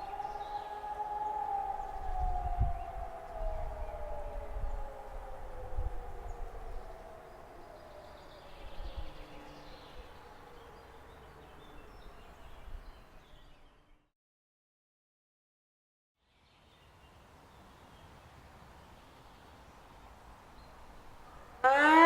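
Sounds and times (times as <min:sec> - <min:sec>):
bird chirps: 0:00.0 - 0:04.9
siren winding down: 0:00.0 - 0:07.8, 0:21.6 - 0:22.0.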